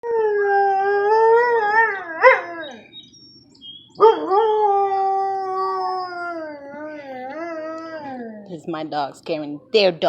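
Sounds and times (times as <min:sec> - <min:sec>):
husky howling: 0:00.0 - 0:02.9, 0:04.0 - 0:08.5.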